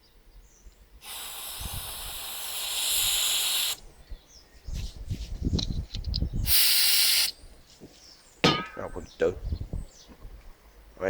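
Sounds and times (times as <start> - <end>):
spray can hissing: 1.0 - 3.8, 6.4 - 7.4.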